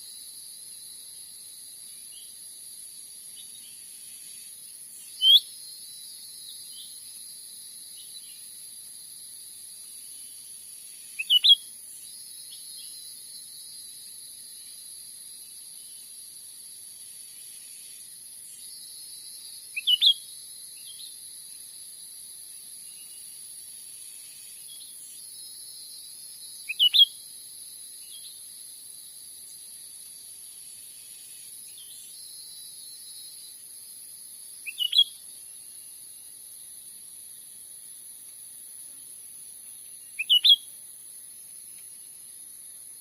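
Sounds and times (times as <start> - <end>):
high insect drone: 0.0 - 43.0
bird chirping: 3.2 - 7.2, 9.9 - 13.6, 18.4 - 21.2, 24.1 - 27.2, 34.5 - 36.1, 39.7 - 40.7.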